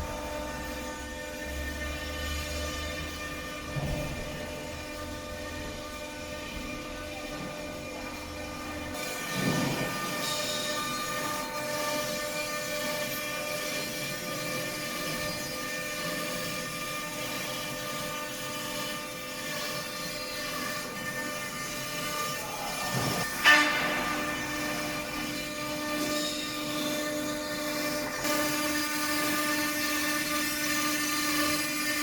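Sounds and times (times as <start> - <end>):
engraving machine spindle whining: 0.0 - 32.0.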